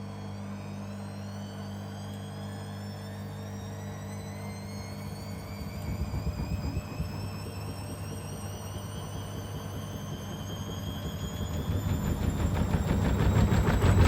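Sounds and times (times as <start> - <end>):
low hum: 0.0 - 14.0
washing machine motor whine: 0.0 - 14.0.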